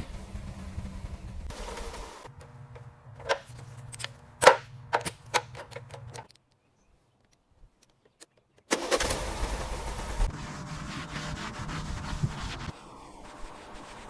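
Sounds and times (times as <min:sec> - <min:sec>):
sharp clicks and knocks: 0:02.3 - 0:06.6, 0:07.2 - 0:08.7.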